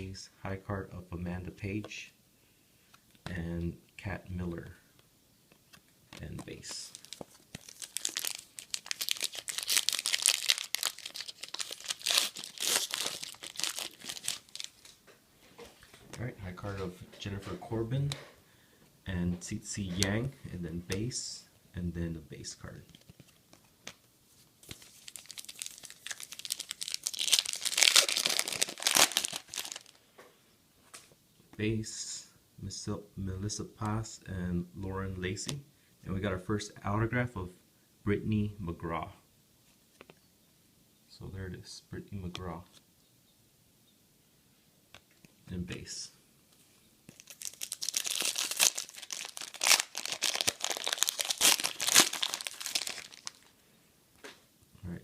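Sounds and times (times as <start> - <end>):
wrapper tearing and crinkling: 6.8 - 15.0, 24.6 - 30.0, 47.1 - 53.5.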